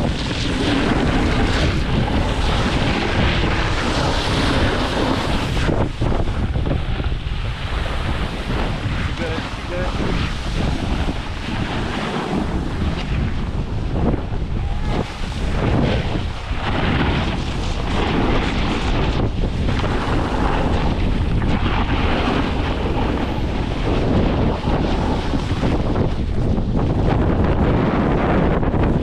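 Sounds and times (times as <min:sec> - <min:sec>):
wind buffeting microphone: 0:00.0 - 0:29.0
ski edges scraping snow: 0:00.1 - 0:06.2.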